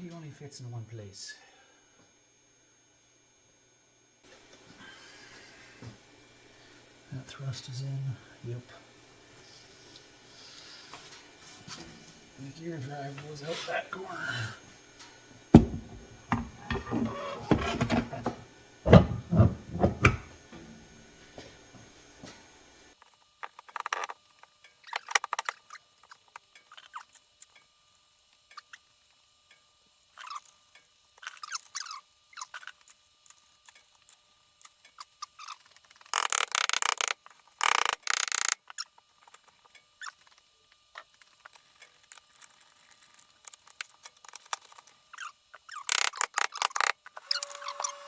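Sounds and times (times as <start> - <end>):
metal scraping and rattling bursts: 15.6 - 20.4
metal parts clicking and clinking: 45.9 - 47.0.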